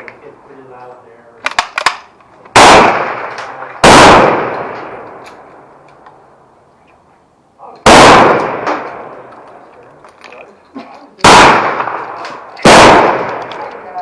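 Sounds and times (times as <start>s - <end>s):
rifle shots with long echo: 1.4s - 6.4s, 7.8s - 9.4s, 11.2s - 14.0s.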